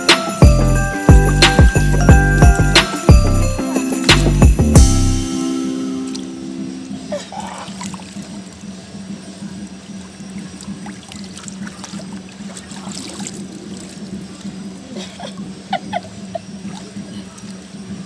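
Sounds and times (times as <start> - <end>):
water trickling and splashing: 6.0 - 18.0.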